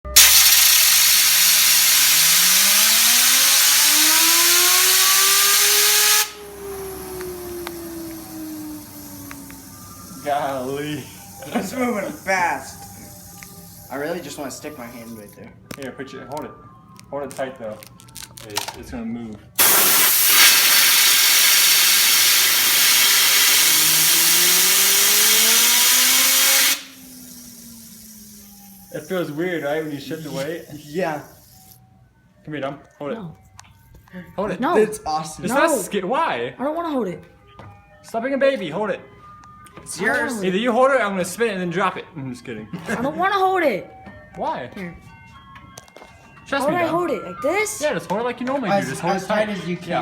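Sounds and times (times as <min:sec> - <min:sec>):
blowing air hiss: 0:00.1 - 0:15.3, 0:19.6 - 0:31.8
fidget spinner whine: 0:00.1 - 0:15.4, 0:19.6 - 0:31.8.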